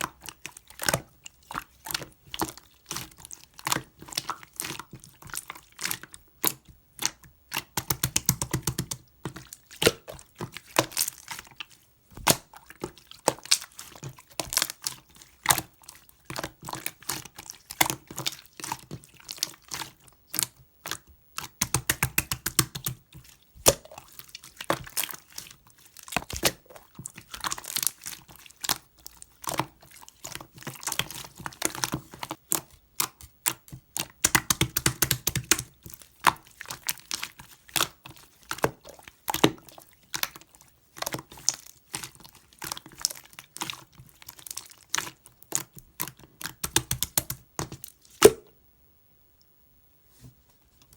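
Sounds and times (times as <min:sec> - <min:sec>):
hands squishing slime: 0:00.0 - 0:48.6
slime air pockets popping: 0:48.2 - 0:48.6.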